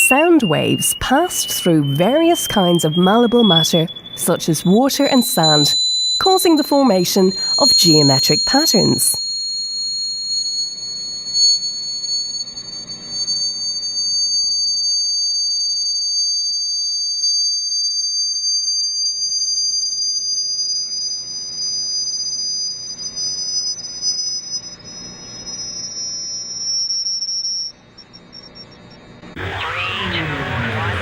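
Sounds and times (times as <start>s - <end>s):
faint high electronic tone: 0.0s - 13.6s, 21.1s - 31.0s
rising and falling electronic tones: 29.2s - 31.0s.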